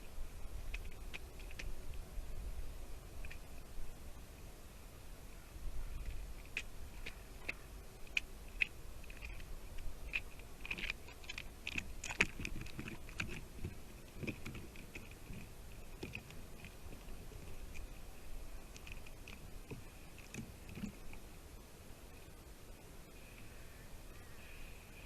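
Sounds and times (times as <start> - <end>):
squirrel clicks and crunches: 0.6 - 2.0, 5.9 - 21.3.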